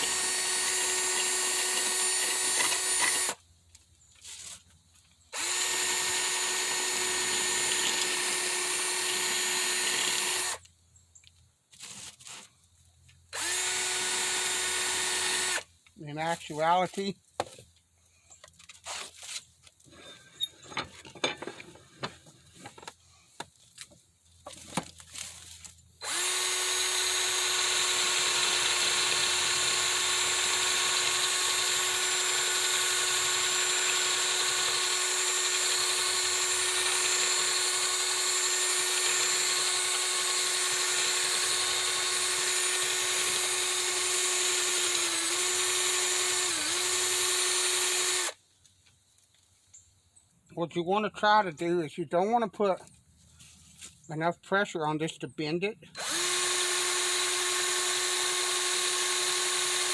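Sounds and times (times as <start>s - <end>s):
electric drill running: 0.0s - 3.4s, 5.4s - 10.6s, 13.4s - 15.6s, 26.0s - 48.4s, 56.0s - 59.9s.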